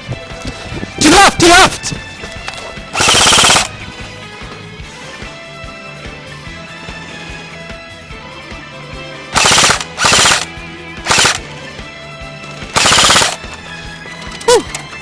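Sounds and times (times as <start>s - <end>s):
background music: 0.0s - 15.0s
airsoft guns firing bursts: 3.0s - 3.7s, 9.4s - 11.4s, 12.8s - 13.5s.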